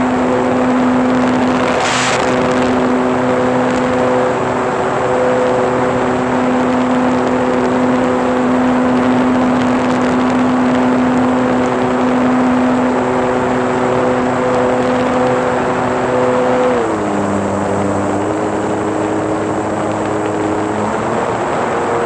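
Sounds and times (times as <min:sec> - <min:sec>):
model airplane motor and propeller: 0:00.0 - 0:22.0
rush of air: 0:01.3 - 0:02.9.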